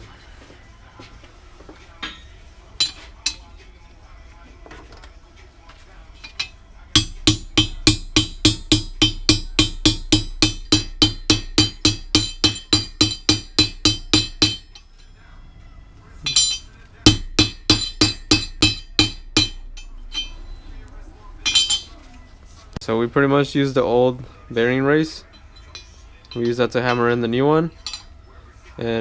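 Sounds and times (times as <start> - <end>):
hammer striking metal: 2.0 - 3.5, 6.2 - 15.2, 16.2 - 20.8, 21.4 - 22.0, 25.2 - 28.2.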